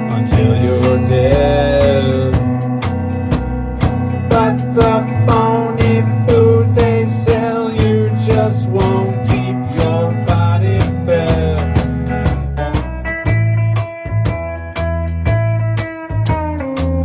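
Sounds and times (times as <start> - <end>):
bass line: 0.0 - 17.0
drum beat: 0.0 - 17.0
lead melody with bending notes: 0.0 - 17.0
rock band playing: 0.0 - 17.0.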